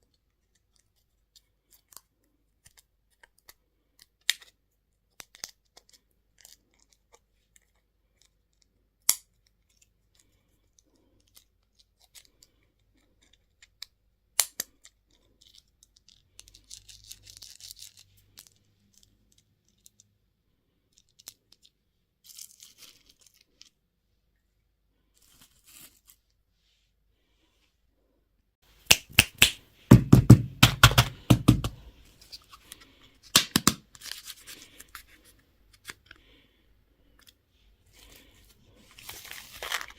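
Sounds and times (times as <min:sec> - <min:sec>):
plastic crinkling and tearing: 0:38.0 - 0:39.9
plastic packaging rustling: 0:38.0 - 0:39.9.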